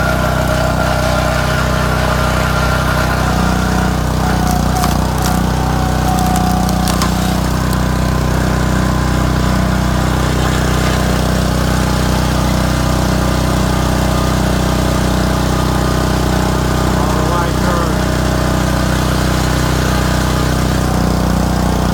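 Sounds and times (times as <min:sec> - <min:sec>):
small gas engine running: 0:00.0 - 0:21.9
sharp clicks: 0:04.5 - 0:07.9.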